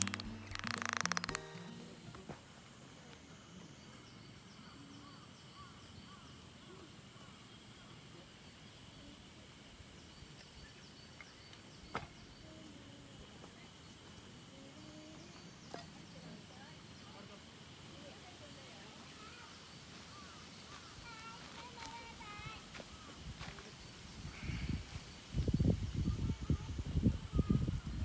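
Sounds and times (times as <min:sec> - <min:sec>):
small bird chirps: 0:00.0 - 0:02.1.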